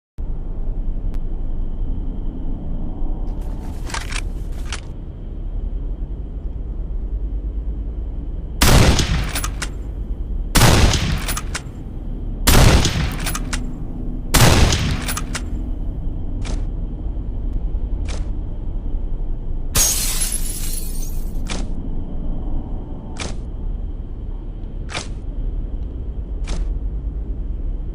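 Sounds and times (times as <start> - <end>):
shotgun shots: 8.6 - 9.7, 10.6 - 11.7, 12.5 - 13.6, 14.4 - 15.5
shotgun action clicks: 8.9 - 9.8, 10.8 - 11.7, 12.6 - 13.7, 14.4 - 15.5.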